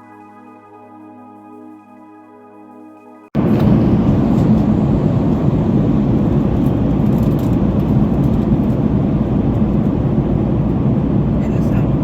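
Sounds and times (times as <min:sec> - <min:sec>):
jet engine and airflow drone: 0:03.3 - 0:12.0.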